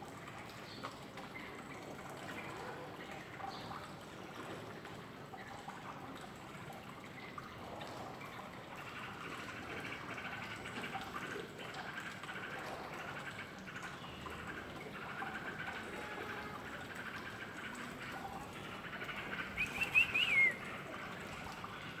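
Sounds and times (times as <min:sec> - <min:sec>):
bird chirping: 0:19.3 - 0:20.6.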